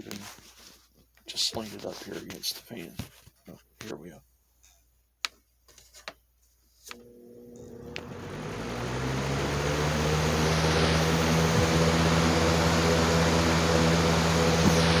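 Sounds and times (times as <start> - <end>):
box fan air rush and motor hum: 7.0 - 15.0.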